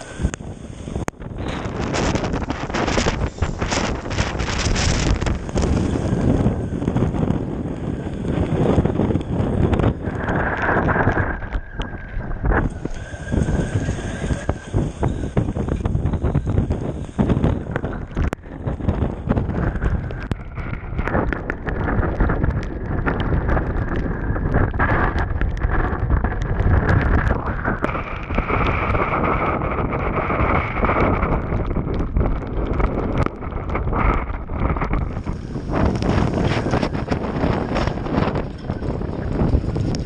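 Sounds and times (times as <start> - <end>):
boat motor running: 0.0 - 29.2
wind buffeting microphone: 0.0 - 40.0.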